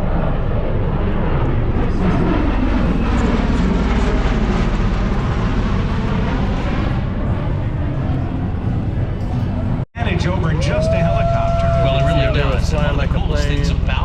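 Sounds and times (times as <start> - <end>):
aircraft rotors rumbling: 0.0 - 14.0.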